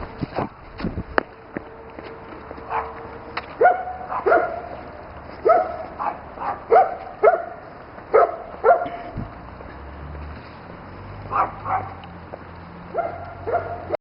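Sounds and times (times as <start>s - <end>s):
dog barking: 2.7s - 3.0s, 3.6s - 4.7s, 5.4s - 9.0s, 11.3s - 12.0s, 12.9s - 14.0s.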